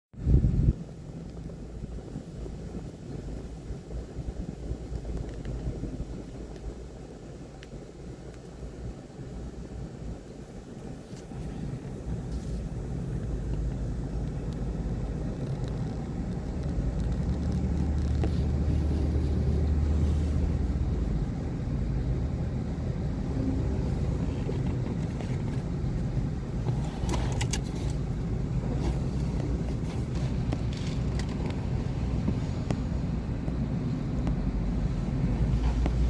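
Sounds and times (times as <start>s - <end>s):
excavator diesel engine running: 18.2s - 27.2s.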